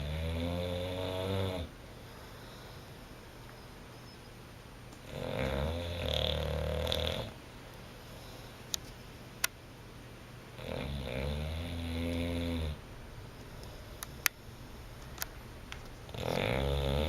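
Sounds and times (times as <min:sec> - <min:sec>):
dog snoring: 0:00.0 - 0:01.7, 0:05.0 - 0:07.4, 0:10.6 - 0:12.8, 0:16.1 - 0:17.0.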